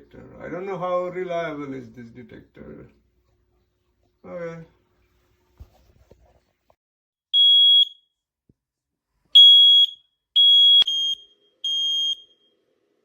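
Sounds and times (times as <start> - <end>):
smoke alarm beeps: 7.4 - 8.2, 9.4 - 12.5.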